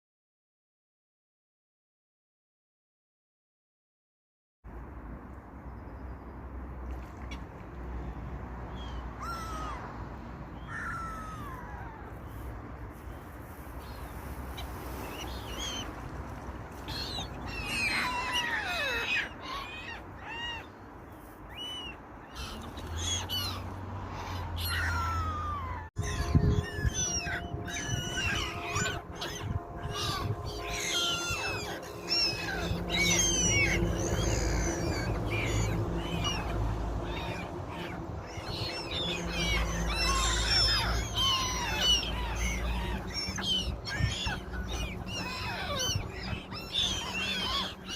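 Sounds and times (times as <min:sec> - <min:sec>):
many birds chirping: 0:10.6 - 0:47.9
steady low rumble: 0:26.0 - 0:47.9.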